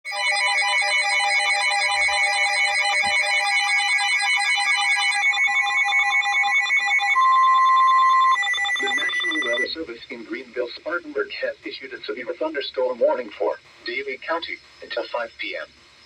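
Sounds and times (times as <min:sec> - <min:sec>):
pulsing electronic alert trill: 0:00.1 - 0:09.7
steady alert tone: 0:00.2 - 0:09.7.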